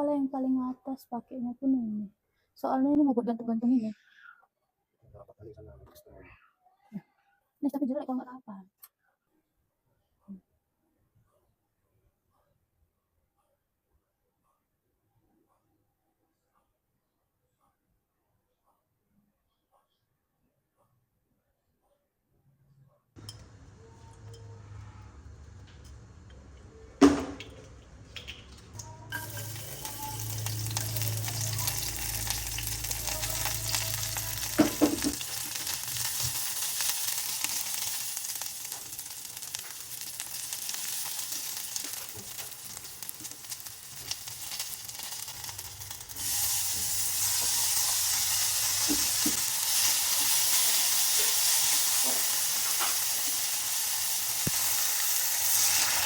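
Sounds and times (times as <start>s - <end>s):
food sizzling in hot oil: 29.1s - 56.0s.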